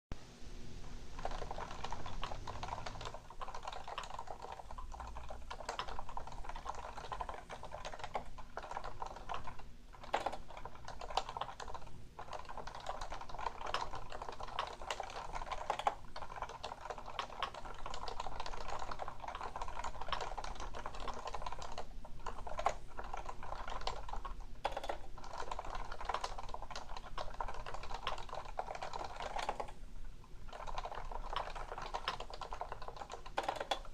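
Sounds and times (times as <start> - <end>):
fast keyboard typing: 0.9 - 33.9.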